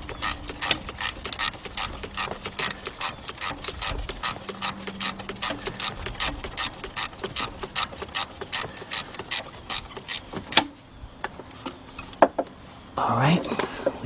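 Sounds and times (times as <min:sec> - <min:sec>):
hand ratchet clicking: 0:00.0 - 0:10.6.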